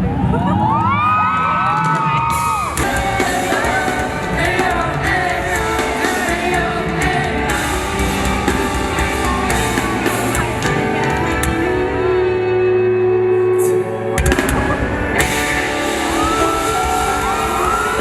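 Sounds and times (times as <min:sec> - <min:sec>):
rock band music: 0:00.4 - 0:18.0
drum beat: 0:01.8 - 0:11.7, 0:14.2 - 0:18.0
person singing: 0:02.3 - 0:18.0.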